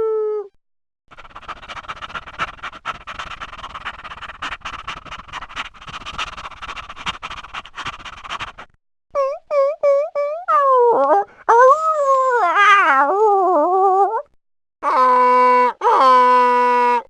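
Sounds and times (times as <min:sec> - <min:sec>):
dog howling: 0:10.2 - 0:17.0.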